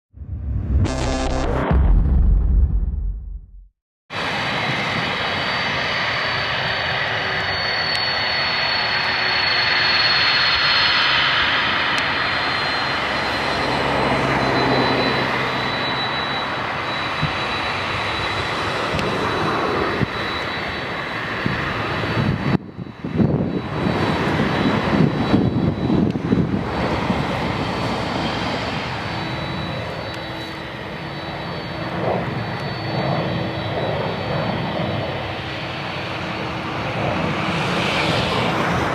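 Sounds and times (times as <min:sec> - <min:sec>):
jet engines running: 0:04.1 - 0:38.9.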